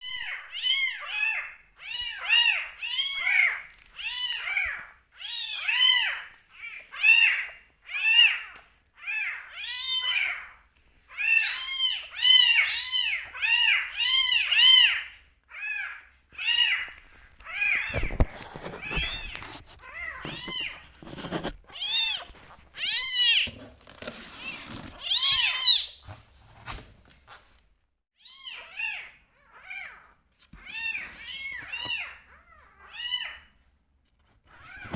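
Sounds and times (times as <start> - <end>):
kittens meowing: 0.0 - 26.0
handling and rustling: 16.8 - 27.9, 34.0 - 34.9.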